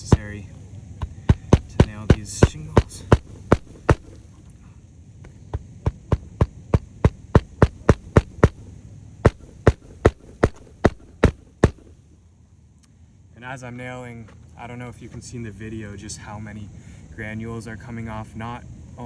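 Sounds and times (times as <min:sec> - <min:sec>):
hammer driving nails into shingles: 0:00.0 - 0:00.4, 0:01.0 - 0:04.2, 0:05.5 - 0:08.7, 0:09.3 - 0:11.9.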